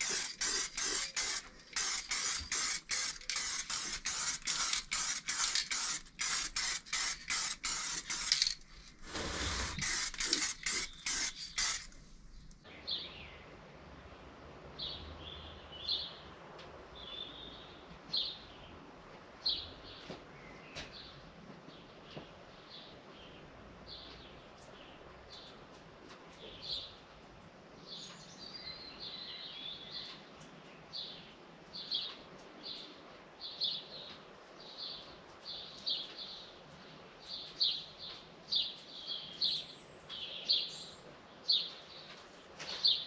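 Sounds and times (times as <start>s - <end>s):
spray paint hissing in bursts: 0.0s - 12.6s.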